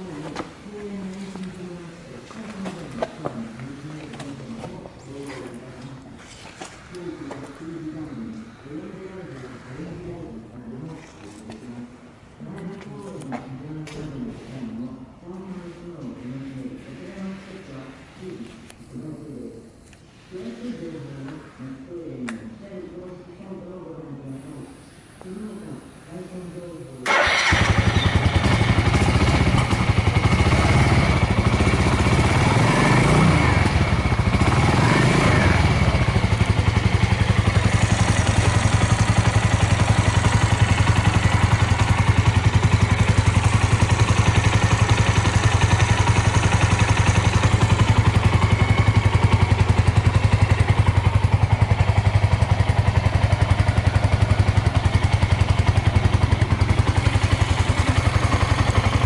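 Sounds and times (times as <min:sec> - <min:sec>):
motorcycle engine idling: 0:27.1 - 0:59.0.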